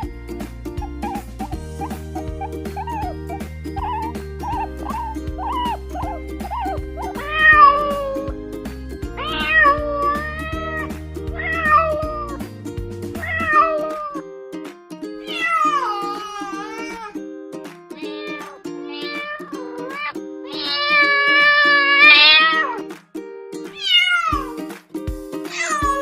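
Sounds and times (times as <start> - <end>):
background music: 0.0 - 26.0
cat meowing: 3.8 - 8.3, 9.2 - 12.4, 13.2 - 14.2, 15.2 - 17.2, 18.0 - 22.8, 23.8 - 24.6, 25.5 - 26.0.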